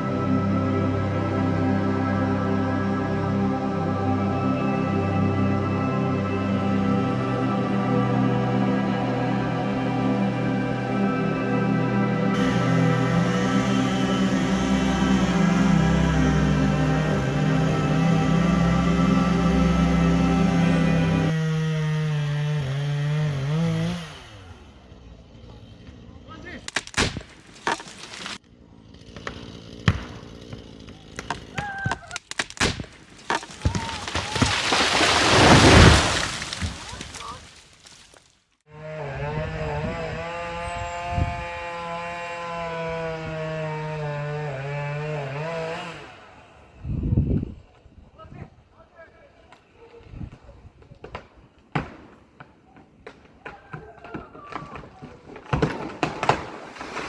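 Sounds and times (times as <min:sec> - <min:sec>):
tree trunk cracking: 0:12.4 - 0:21.5, 0:25.4 - 0:38.5, 0:49.6 - 0:57.0
tree crashing to ground: 0:12.4 - 0:24.6, 0:26.6 - 0:28.4, 0:29.0 - 0:38.4, 0:51.0 - 0:57.0.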